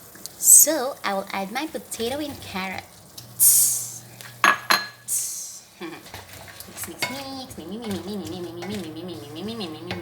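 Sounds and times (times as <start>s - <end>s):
utensil scraping in a pan: 5.9s - 9.0s.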